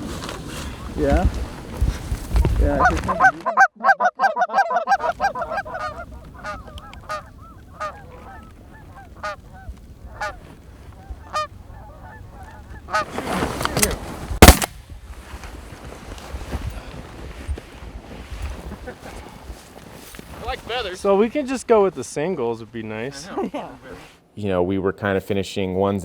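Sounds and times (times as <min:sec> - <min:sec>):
geese honking: 0:02.8 - 0:10.4, 0:11.2 - 0:13.1
sharp loud crack: 0:14.4 - 0:14.7.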